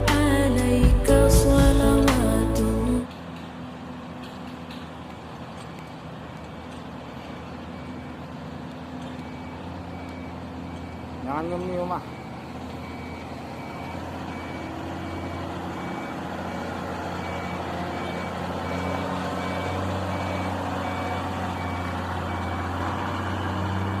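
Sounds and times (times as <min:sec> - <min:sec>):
crane diesel engine running: 0:00.0 - 0:24.0
warning alarm beeping: 0:09.2 - 0:23.6.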